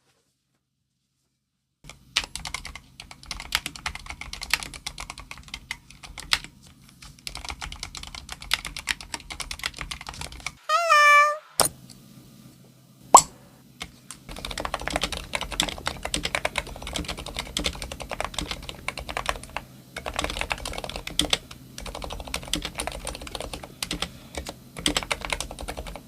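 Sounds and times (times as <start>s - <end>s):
mechanical keyboard typing: 1.9s - 6.5s, 7.3s - 10.5s, 14.3s - 26.0s.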